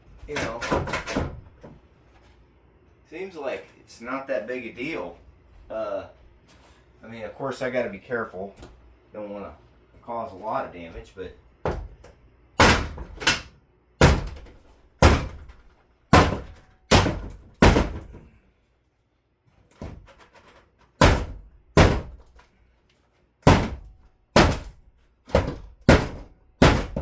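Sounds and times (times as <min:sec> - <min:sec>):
heavy thuds on wall panelling: 0:00.3 - 0:01.8, 0:11.6 - 0:18.4, 0:21.0 - 0:22.4, 0:23.4 - 0:27.0.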